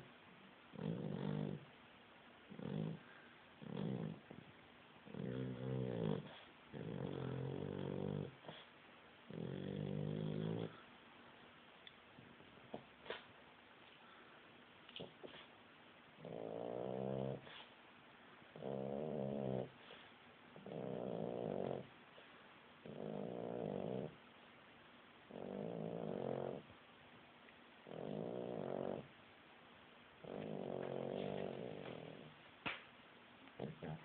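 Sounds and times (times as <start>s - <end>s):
pet snoring: 0.7s - 1.7s, 2.5s - 8.7s, 9.3s - 10.8s, 16.2s - 17.7s, 18.6s - 22.0s, 22.8s - 24.2s, 25.3s - 26.7s, 27.8s - 29.1s, 30.2s - 32.4s, 33.6s - 34.0s.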